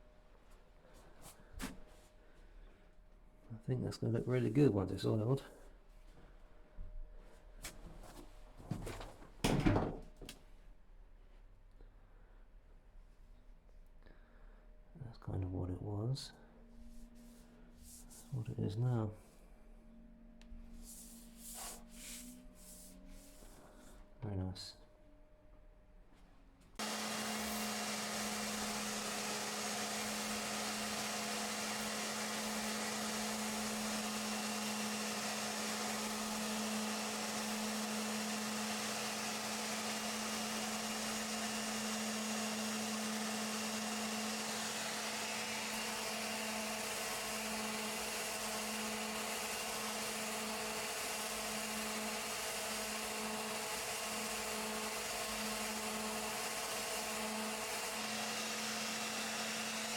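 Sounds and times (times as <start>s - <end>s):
orbital sander sanding wood: 26.8s - 59.9s.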